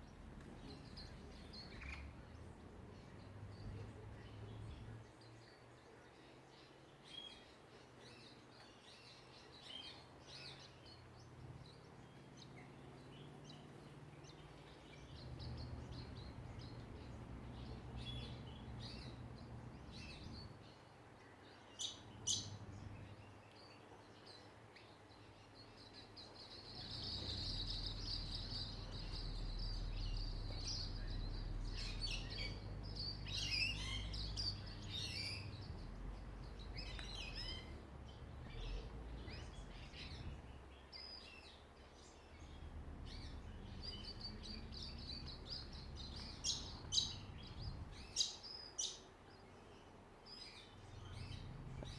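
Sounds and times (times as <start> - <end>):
songbirds chirping: 0.0 - 51.9
sharp loud bird calls: 21.7 - 23.3, 26.3 - 41.2, 42.4 - 49.1
low rumble: 42.4 - 48.2.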